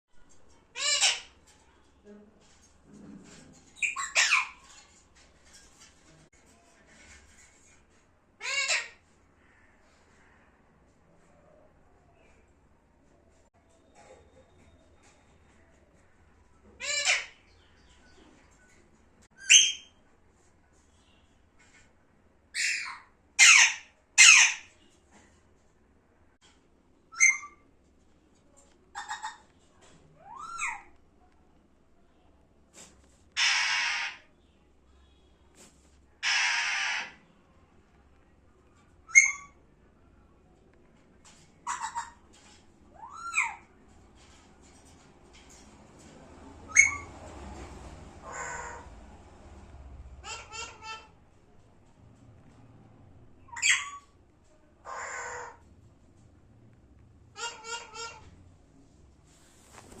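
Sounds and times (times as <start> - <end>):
parrot squawking: 0.7 - 1.4, 3.8 - 4.8, 8.4 - 9.0, 16.8 - 17.4, 22.5 - 24.7, 27.1 - 27.6, 28.9 - 29.5, 30.2 - 30.9, 33.4 - 34.3, 36.2 - 37.2, 39.1 - 39.6, 41.6 - 42.3, 42.9 - 43.7, 46.7 - 47.1, 48.2 - 49.0, 50.2 - 51.1, 53.4 - 54.1, 54.8 - 55.6, 57.3 - 58.3.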